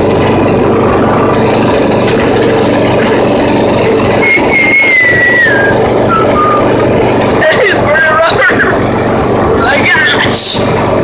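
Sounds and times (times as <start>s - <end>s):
riding lawn mower engine running: 0.0s - 11.0s
high wavering tone: 4.2s - 6.8s.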